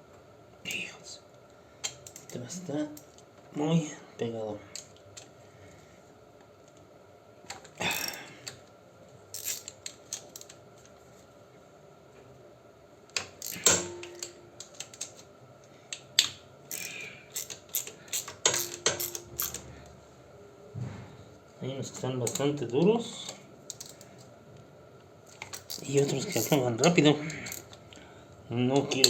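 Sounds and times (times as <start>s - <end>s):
metal tools clinking: 9.4s - 10.5s, 13.4s - 15.1s, 16.7s - 19.7s, 25.4s - 27.8s
socket ratchet clicking: 13.2s - 15.2s, 16.2s - 19.6s.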